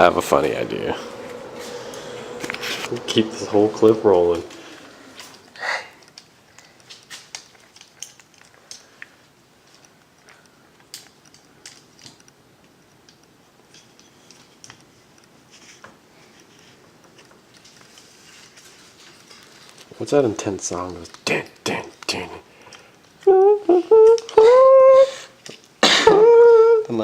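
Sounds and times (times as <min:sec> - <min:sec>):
small hard objects clicking: 0:06.0 - 0:15.2.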